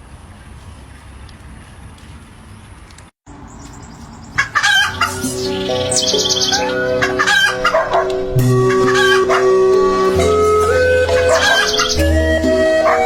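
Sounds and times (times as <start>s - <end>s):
chickens clucking and crowing: 4.0s - 13.0s
background music of held notes: 4.6s - 13.0s.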